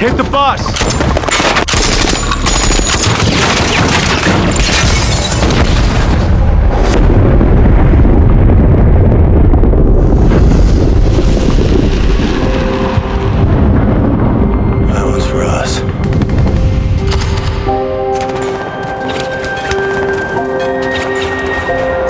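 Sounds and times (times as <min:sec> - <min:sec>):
rapid gunfire: 0:00.0 - 0:06.2, 0:16.0 - 0:18.4
rumbling explosions: 0:00.0 - 0:22.0.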